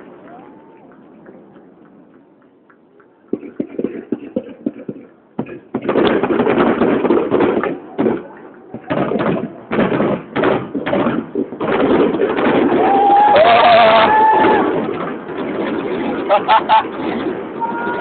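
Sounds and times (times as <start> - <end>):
fireworks bursting: 1.9 - 18.0.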